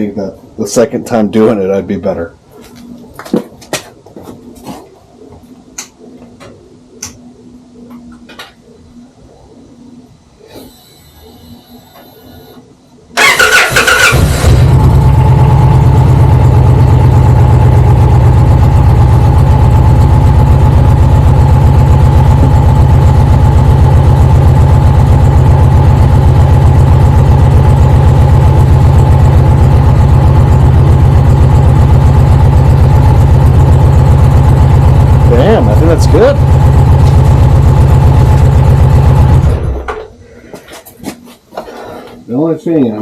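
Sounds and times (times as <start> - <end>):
faint engine whine: 0.0 - 43.0
motorcycle engine starting and idling: 10.6 - 40.2.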